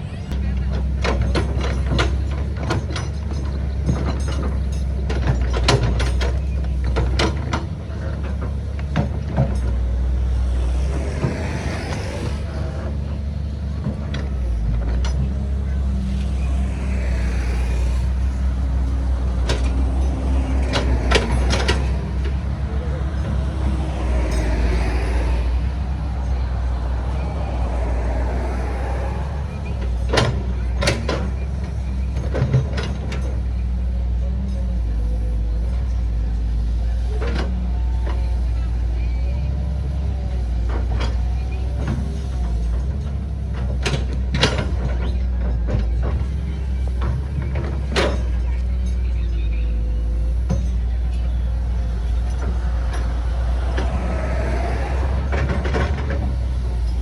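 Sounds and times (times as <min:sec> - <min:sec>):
low machine drone: 0:00.0 - 0:33.2, 0:45.4 - 0:57.0
knocks and clanks: 0:16.0 - 0:33.5, 0:40.6 - 0:49.1, 0:50.2 - 0:57.0.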